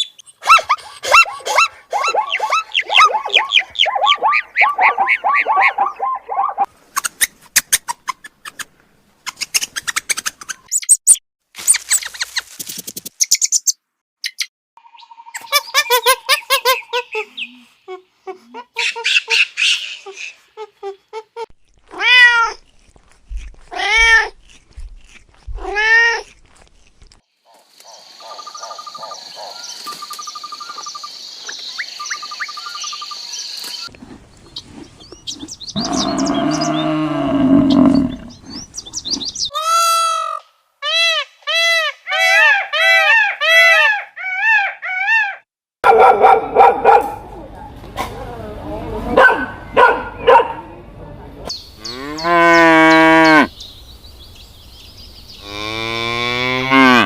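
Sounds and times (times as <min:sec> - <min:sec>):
bird trills and chirps: 0:01.2 - 0:08.6, 0:13.2 - 0:17.6, 0:28.0 - 0:39.5
cow mooing: 0:35.8 - 0:38.3, 0:55.4 - 0:57.0
loud low animal call: 0:35.8 - 0:38.3.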